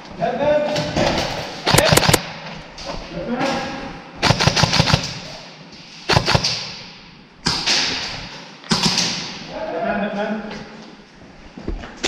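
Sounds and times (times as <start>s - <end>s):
airsoft guns firing: 1.7s - 2.3s, 4.2s - 5.4s, 6.1s - 6.8s, 7.4s - 9.3s.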